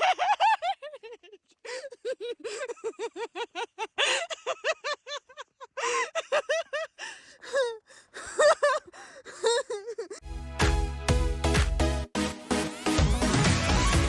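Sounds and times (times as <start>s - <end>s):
person laughing hard: 0.0s - 7.0s, 8.2s - 10.2s
breathless gasps: 1.6s - 2.7s, 7.0s - 9.4s.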